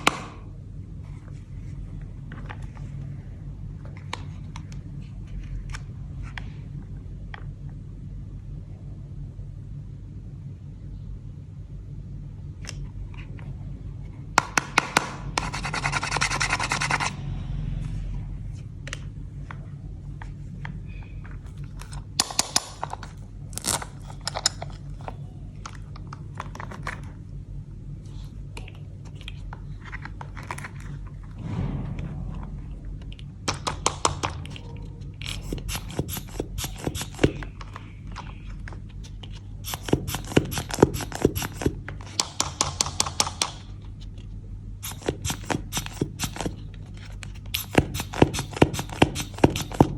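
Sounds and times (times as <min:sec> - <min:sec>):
steady low hum: 0:00.0 - 0:49.9
toy pieces clicking and scraping: 0:35.2 - 0:37.7, 0:39.3 - 0:41.8, 0:44.8 - 0:49.9.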